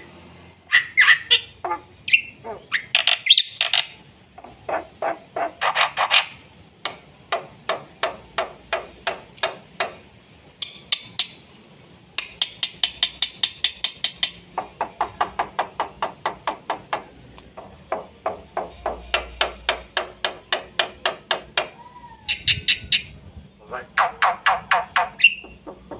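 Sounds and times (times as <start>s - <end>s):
bird singing sharp clacking notes: 10.6s - 11.4s, 24.0s - 25.9s.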